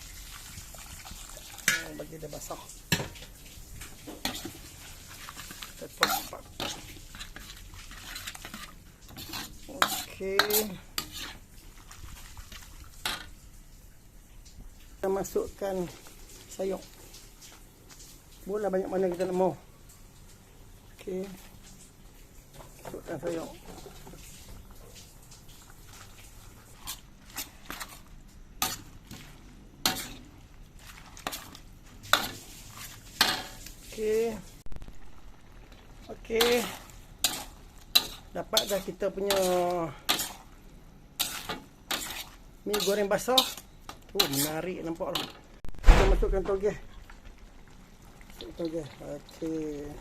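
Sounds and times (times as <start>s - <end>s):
frying sizzle: 0.0s - 50.0s
metal spatula scraping a pan: 1.3s - 13.4s, 25.8s - 34.3s, 36.2s - 45.5s.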